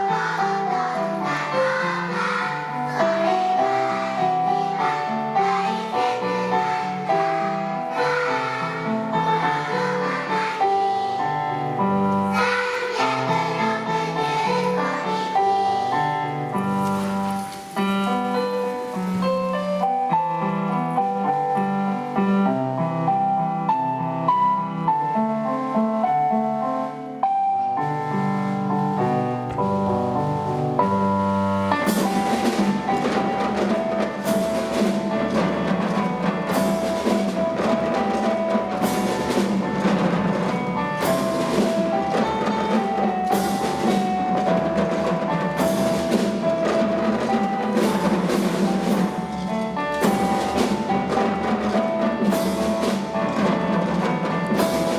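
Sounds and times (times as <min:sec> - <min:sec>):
pop band music: 0:00.0 - 0:11.2, 0:11.9 - 0:15.9
piano playing held notes: 0:00.0 - 0:54.9
drum kit beat: 0:31.8 - 0:54.9.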